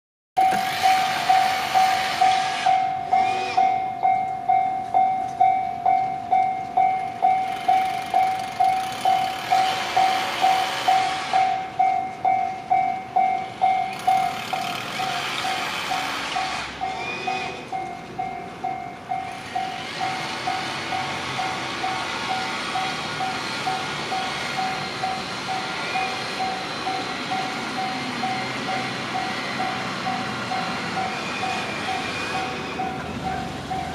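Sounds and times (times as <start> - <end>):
level crossing alarm clanging: 0.4 - 33.9
rushing noise: 9.0 - 11.9, 19.2 - 33.9.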